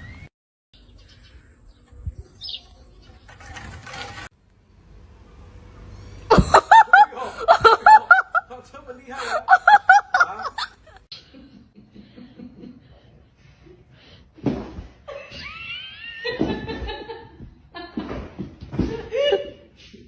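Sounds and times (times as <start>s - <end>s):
person laughing: 6.3s - 8.6s, 9.2s - 13.0s.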